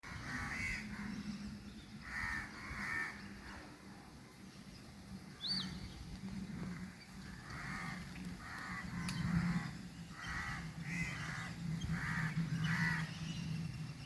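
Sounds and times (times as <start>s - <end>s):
crows cawing: 0.1s - 1.1s, 2.0s - 3.2s, 6.7s - 13.1s.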